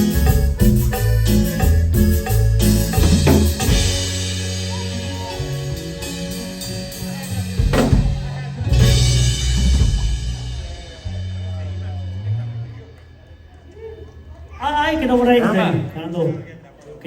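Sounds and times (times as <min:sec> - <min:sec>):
drum kit hits: 0:00.0 - 0:12.8
sustained bass and keyboard notes: 0:00.0 - 0:16.5.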